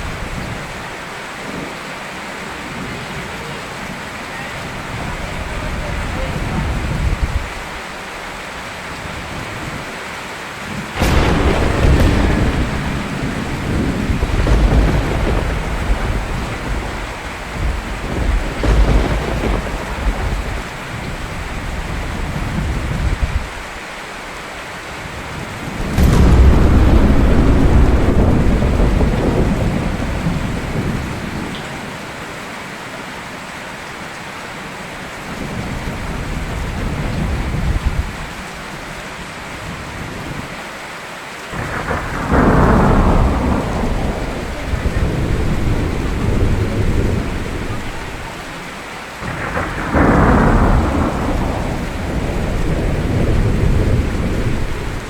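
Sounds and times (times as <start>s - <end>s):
steady rain: 0.0s - 55.0s
thunder rumbling: 10.9s - 23.2s, 25.6s - 32.4s, 41.6s - 55.0s.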